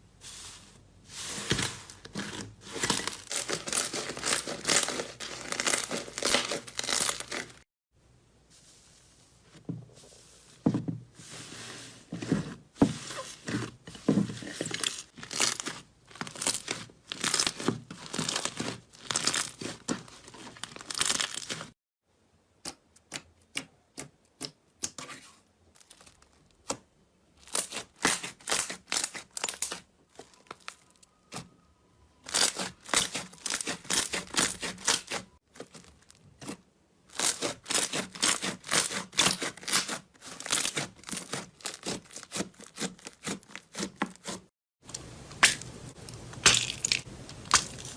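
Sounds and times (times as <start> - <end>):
slime squeezed crackling and popping: 15.3 - 19.8, 32.3 - 35.1.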